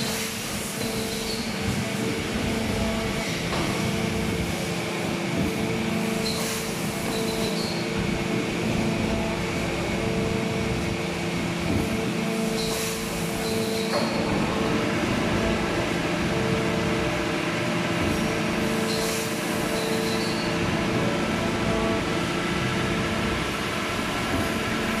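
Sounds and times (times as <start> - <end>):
injection moulding machine hum: 0.0 - 25.0.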